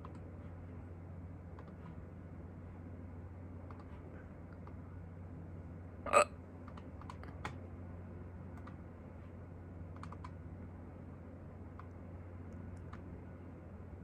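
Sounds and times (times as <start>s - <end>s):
person hiccupping: 6.1s - 6.3s.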